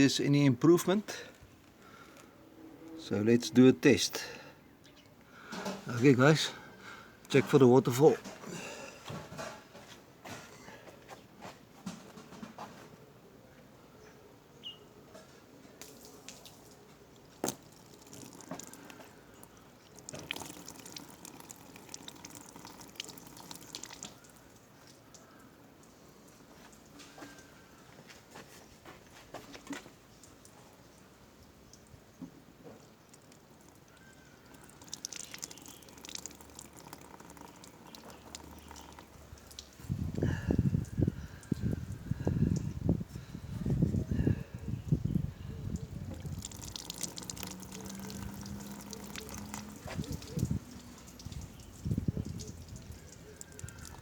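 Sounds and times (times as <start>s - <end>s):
rustling and knocks: 8.2s - 13.0s
water dripping from radiator: 15.7s - 28.0s, 29.5s - 43.3s, 44.9s - 54.0s.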